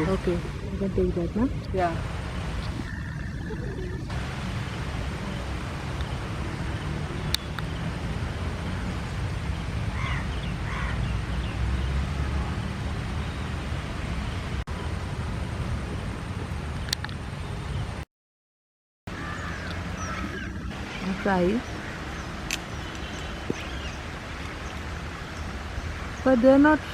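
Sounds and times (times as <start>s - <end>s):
low outdoor rumble: 0.0s - 18.0s, 19.1s - 26.9s
bird calling: 2.4s - 4.2s, 9.9s - 11.9s, 19.1s - 26.9s.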